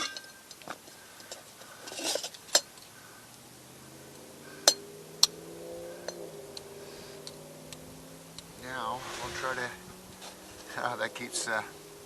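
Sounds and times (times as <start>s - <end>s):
metal cookware clinking: 0.0s - 0.5s.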